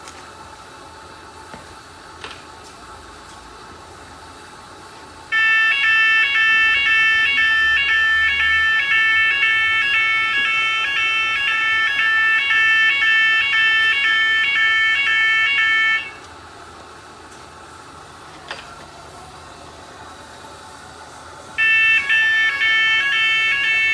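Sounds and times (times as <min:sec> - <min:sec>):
multi-tone electronic alarm: 0:05.3 - 0:16.3, 0:21.6 - 0:23.9.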